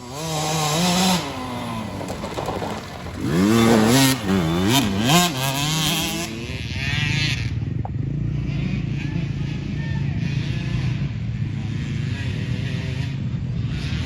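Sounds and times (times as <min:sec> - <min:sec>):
dirt bike engines revving: 0:00.0 - 0:14.0.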